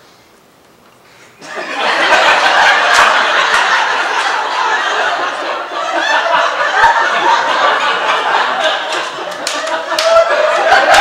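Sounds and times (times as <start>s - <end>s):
audience laughing: 1.4s - 11.0s
scattered claps: 8.6s - 11.0s.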